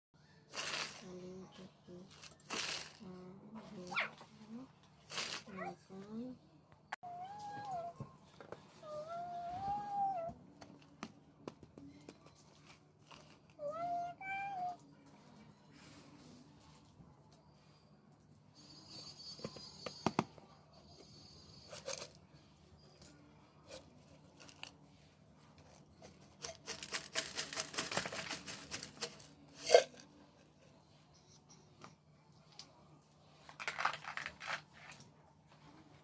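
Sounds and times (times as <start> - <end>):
packaging tearing and crinkling: 33.5 - 34.9.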